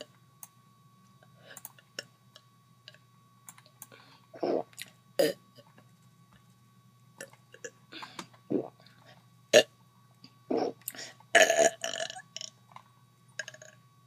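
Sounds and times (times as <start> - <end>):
person burping: 4.4 - 5.4, 10.5 - 10.8, 11.4 - 12.5.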